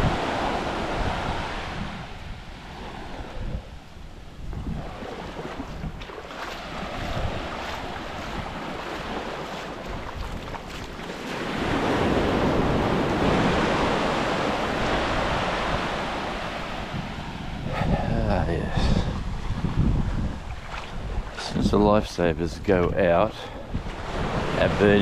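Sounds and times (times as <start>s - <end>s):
ocean waves breaking: 0.0s - 25.0s
wind buffeting microphone: 0.0s - 25.0s.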